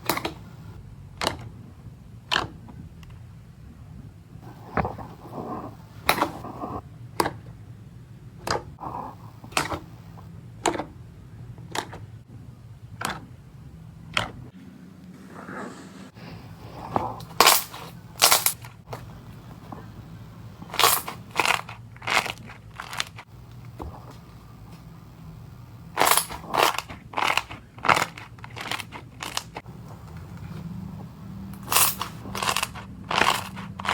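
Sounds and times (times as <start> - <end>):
faint low hum: 0.0 - 33.9.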